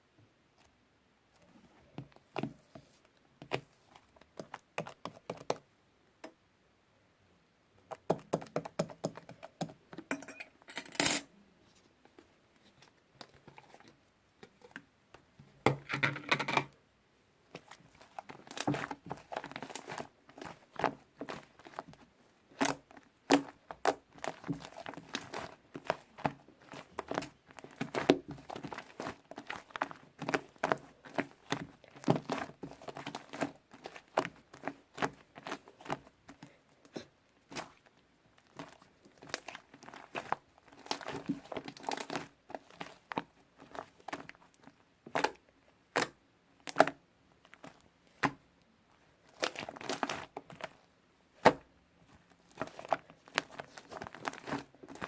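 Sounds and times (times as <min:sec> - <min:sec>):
slime crackling and popping: 0:17.5 - 0:36.4, 0:37.5 - 0:48.4, 0:49.3 - 0:51.7, 0:52.4 - 0:55.0.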